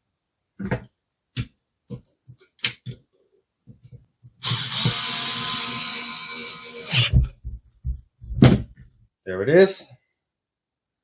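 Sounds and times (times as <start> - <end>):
cordless drill whirring: 4.4 - 7.1.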